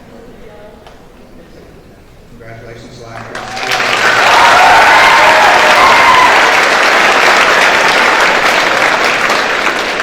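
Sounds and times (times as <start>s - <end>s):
audience applauding: 3.1s - 10.0s.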